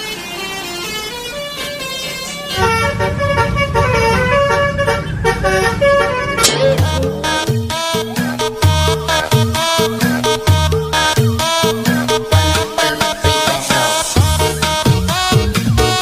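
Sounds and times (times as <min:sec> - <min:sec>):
multi-tone bus horn tune: 0:00.0 - 0:16.0
low rumble: 0:02.6 - 0:09.2
music with bass beat: 0:06.4 - 0:16.0.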